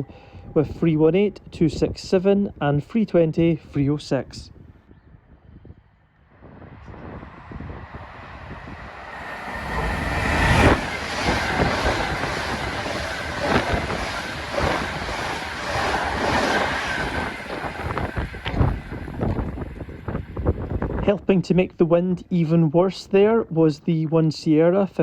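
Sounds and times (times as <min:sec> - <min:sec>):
wind buffeting microphone: 0:00.0 - 0:22.0
electric train rushing past: 0:06.2 - 0:21.2
train wheels clacking: 0:08.9 - 0:20.2.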